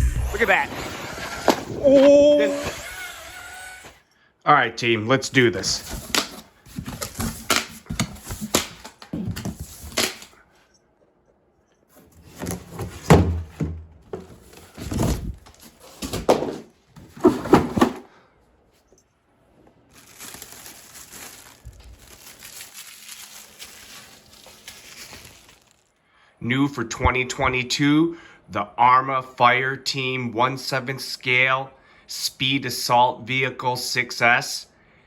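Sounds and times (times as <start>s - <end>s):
cardboard box being opened: 5.8s - 10.3s, 14.1s - 18.0s
faint packaging rustle: 18.7s - 26.0s.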